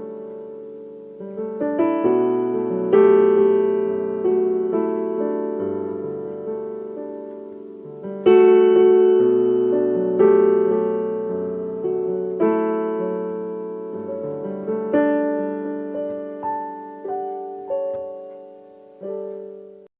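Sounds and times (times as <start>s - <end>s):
gentle solo piano chords: 0.0s - 19.9s.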